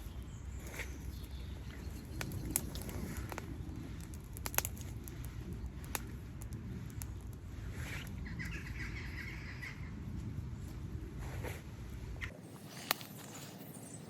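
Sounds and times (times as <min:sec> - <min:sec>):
wood fire crackling and popping: 0:00.6 - 0:08.4.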